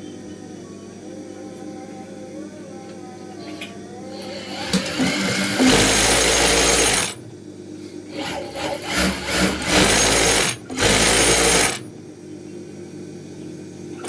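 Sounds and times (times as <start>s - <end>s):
sewing machine running: 4.1s - 7.2s, 8.1s - 11.9s.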